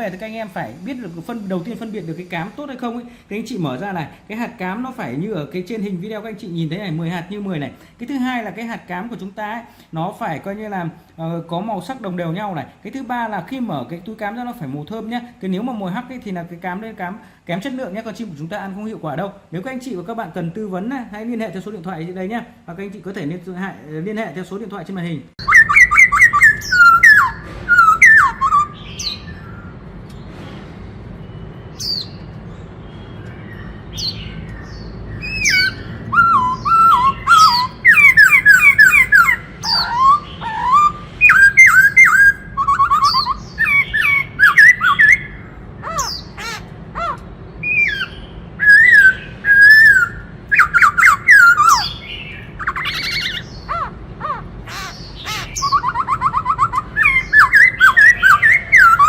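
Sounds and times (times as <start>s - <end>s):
bird singing whistled phrases: 25.4s - 29.7s, 33.2s - 53.9s, 54.7s - 59.0s.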